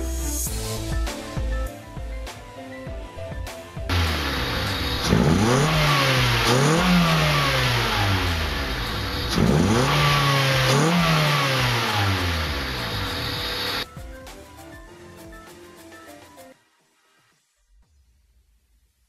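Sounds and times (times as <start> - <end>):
car engine revving: 3.9 - 13.8
loud intake noise: 3.9 - 13.8.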